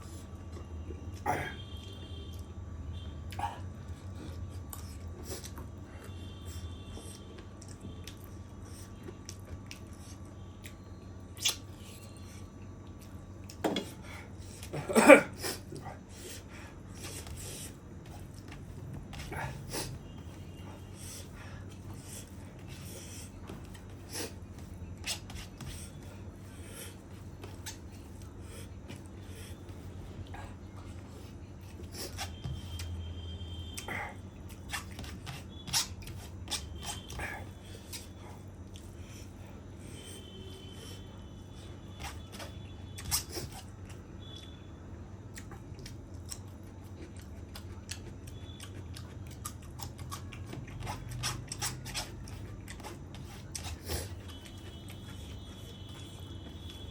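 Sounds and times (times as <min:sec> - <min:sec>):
person chewing: 0:03.3 - 0:06.2, 0:06.9 - 0:10.8, 0:11.4 - 0:32.9, 0:33.6 - 0:39.3, 0:45.3 - 0:56.9
wet mouth clicks: 0:11.4 - 0:11.7.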